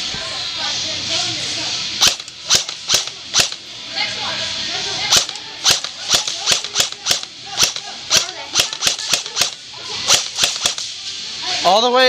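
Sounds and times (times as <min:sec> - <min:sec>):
airsoft gun shots: 0:02.0 - 0:03.6, 0:05.1 - 0:10.9.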